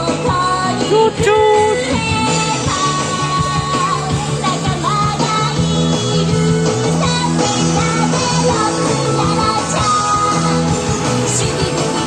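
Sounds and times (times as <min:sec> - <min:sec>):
person singing: 0:00.0 - 0:12.0
repeating bass line: 0:00.7 - 0:03.5.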